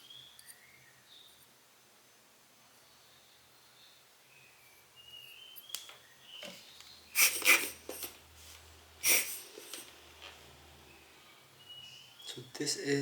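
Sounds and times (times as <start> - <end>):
puffs of air blown on lens: 7.1 - 9.9.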